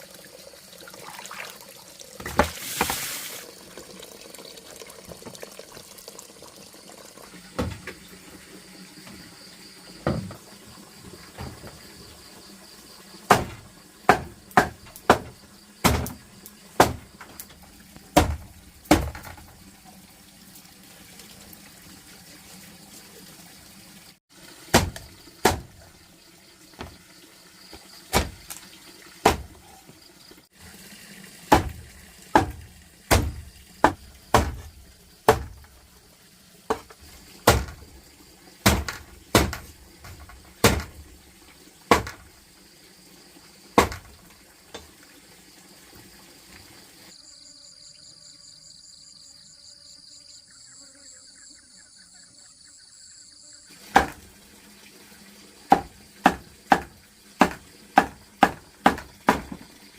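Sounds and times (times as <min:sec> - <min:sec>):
sharp knocks: 0:13.3 - 0:16.2, 0:24.7 - 0:25.7, 0:28.1 - 0:28.4, 0:32.4 - 0:34.7, 0:38.6 - 0:41.0, 0:41.9 - 0:42.2.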